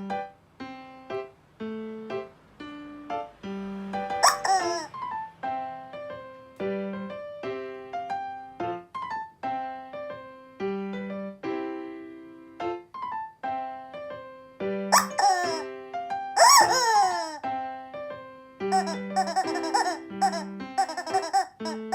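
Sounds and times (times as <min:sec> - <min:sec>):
piano-sound keyboard tune: 0:00.0 - 0:21.9.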